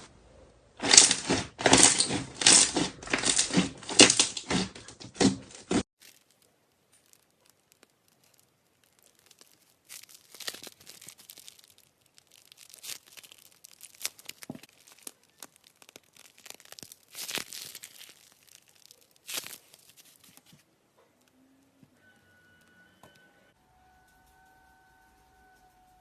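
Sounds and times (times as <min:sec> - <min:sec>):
slime crackling and popping: 0:00.8 - 0:20.6.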